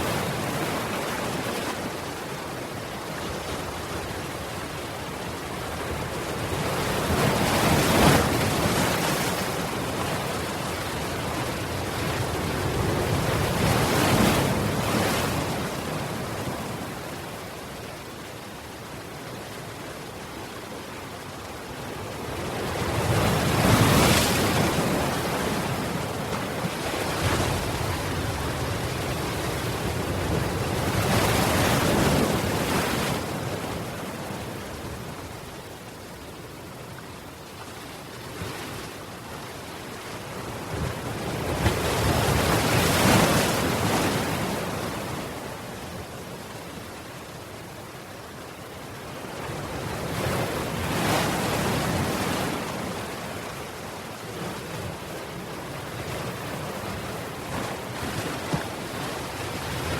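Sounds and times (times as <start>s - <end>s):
ocean waves breaking: 22.0s - 36.0s, 40.2s - 46.9s, 49.4s - 59.9s.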